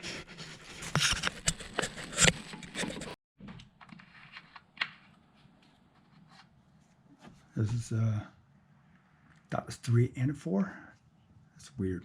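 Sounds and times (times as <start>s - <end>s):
rustling and clicking handling: 0.8s - 7.8s.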